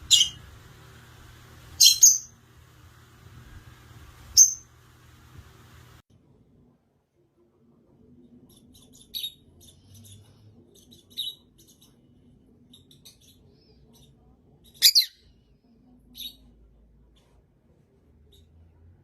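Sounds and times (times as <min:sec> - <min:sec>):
parrot squawking: 0:00.0 - 0:00.5, 0:01.8 - 0:02.4.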